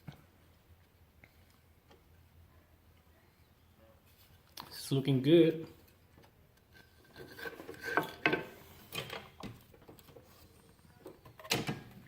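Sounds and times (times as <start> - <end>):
wood rubbing and scraping: 6.7 - 10.9.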